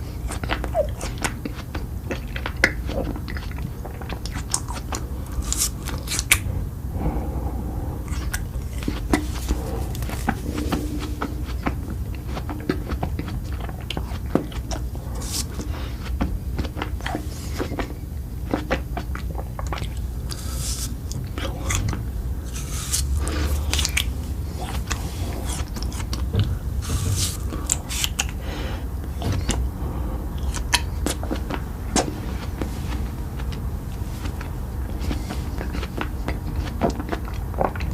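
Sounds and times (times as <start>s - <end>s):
close chewing and biting food: 0.0s - 37.9s
steady low hum: 0.0s - 37.9s.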